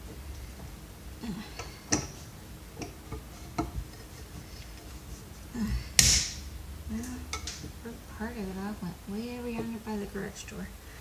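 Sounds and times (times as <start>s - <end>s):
plastic snapping with a crack: 6.0s - 6.4s.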